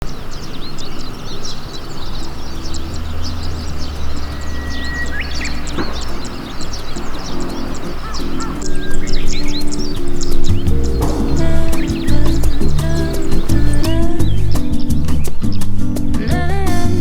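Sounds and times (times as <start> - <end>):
small birds chirping: 0.0 - 16.5
low steady hum: 0.1 - 14.6
whistled note: 3.3 - 9.4.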